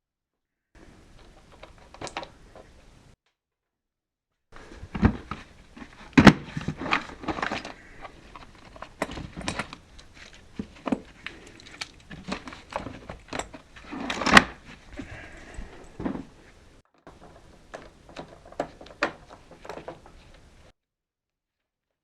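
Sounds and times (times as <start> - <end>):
tools and metal parts rattling: 5.0 - 16.4, 17.1 - 20.7.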